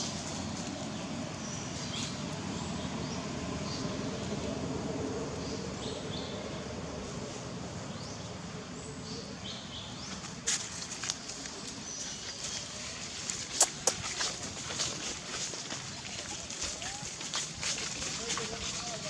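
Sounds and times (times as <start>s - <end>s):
outdoor background noise: 0.0s - 19.0s
sharp clicks: 13.6s - 14.0s.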